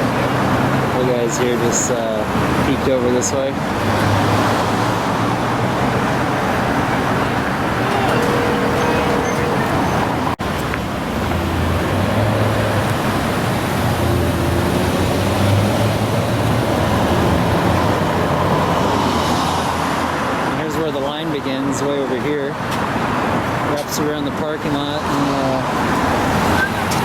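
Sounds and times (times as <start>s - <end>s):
car traffic moving: 0.0s - 20.5s.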